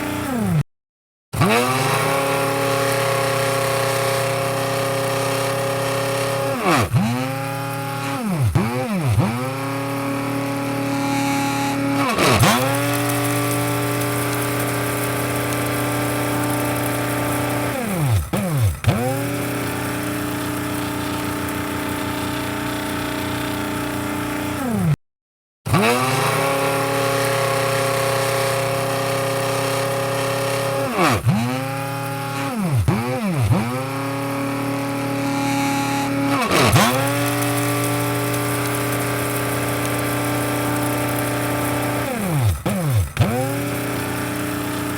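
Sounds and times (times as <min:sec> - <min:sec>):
coffee grinder motor whining: 0:00.0 - 0:00.6, 0:01.4 - 0:25.0, 0:25.7 - 0:44.9.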